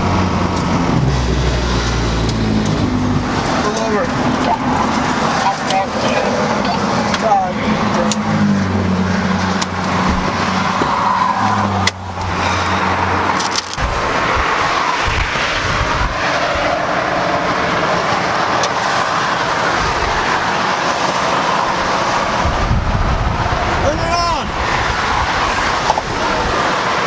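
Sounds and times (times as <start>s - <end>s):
car engine running: 0.0s - 26.8s
tyre and wind noise: 7.6s - 27.0s.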